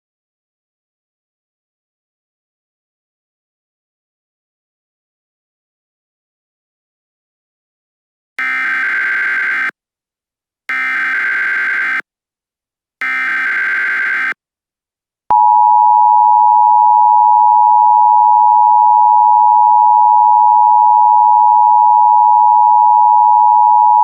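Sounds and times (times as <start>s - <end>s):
digital header tone burst: 8.4s - 9.7s, 10.7s - 12.0s, 13.0s - 14.4s.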